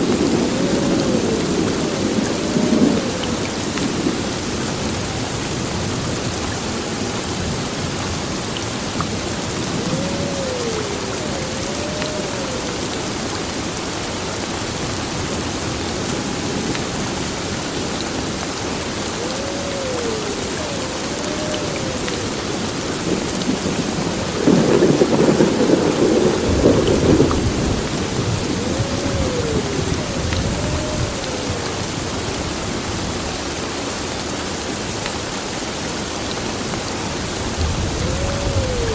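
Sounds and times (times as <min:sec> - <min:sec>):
heavy rain pouring: 0:00.0 - 0:38.9
thunderclap rumbling: 0:19.2 - 0:32.0, 0:37.4 - 0:38.9.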